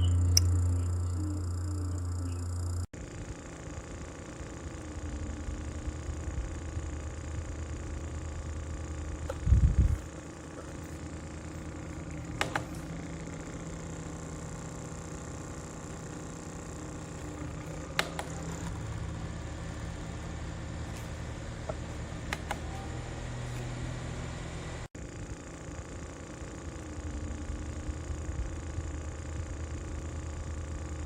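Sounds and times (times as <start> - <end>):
desk fan running: 0.0 - 31.0
sharp clicks: 12.2 - 13.0, 17.2 - 18.8, 21.7 - 22.8.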